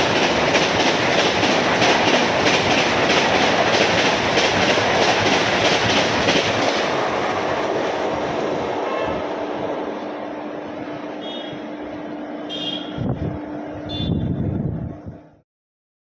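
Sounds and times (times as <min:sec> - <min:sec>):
train wheels clattering on rails: 0:00.0 - 0:08.8.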